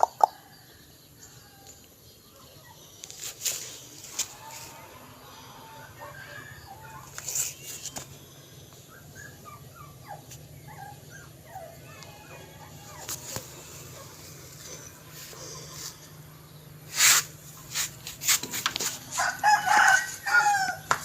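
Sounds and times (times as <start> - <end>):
dogs whimpering: 8.8 - 16.0.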